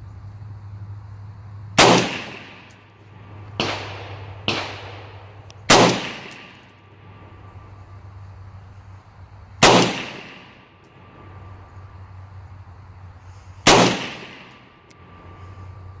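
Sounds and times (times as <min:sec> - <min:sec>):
rifle shots with echo: 0:01.8 - 0:06.9, 0:09.6 - 0:10.7, 0:13.6 - 0:14.7.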